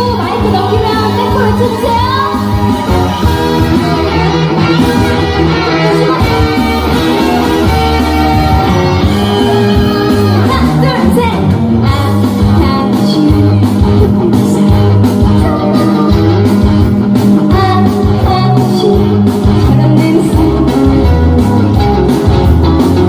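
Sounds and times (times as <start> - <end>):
upbeat trot music with guitar: 0.0 - 23.0
person singing: 4.9 - 8.0, 9.0 - 16.4, 17.5 - 21.3.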